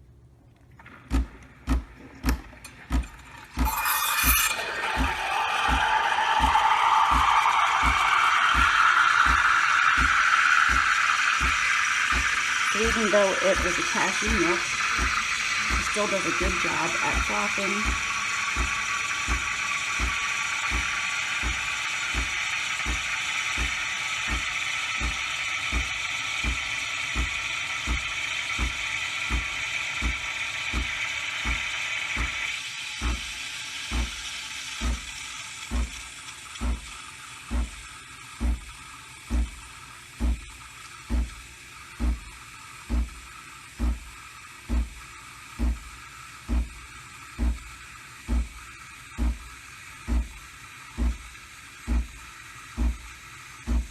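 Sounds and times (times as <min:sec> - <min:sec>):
milk steaming hiss: 0:03.6 - 0:53.9
machine low pulsing thump: 0:04.8 - 0:33.3, 0:33.9 - 0:34.2, 0:34.8 - 0:35.1, 0:35.7 - 0:36.0, 0:36.6 - 0:36.9, 0:37.5 - 0:37.8, 0:38.4 - 0:38.7, 0:39.3 - 0:39.6, 0:40.2 - 0:40.5, 0:41.1 - 0:41.4, 0:42.0 - 0:43.2, 0:43.8 - 0:45.0, 0:45.6 - 0:46.8, 0:47.4 - 0:48.6, 0:49.2 - 0:49.5, 0:50.1 - 0:50.4, 0:51.0 - 0:51.3, 0:51.9 - 0:53.9.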